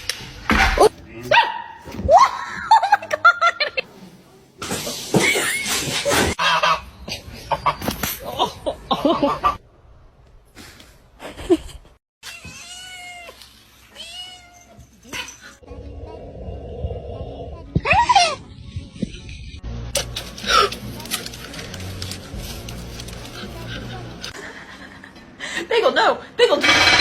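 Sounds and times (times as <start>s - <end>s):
cat meowing: 12.3s - 14.8s.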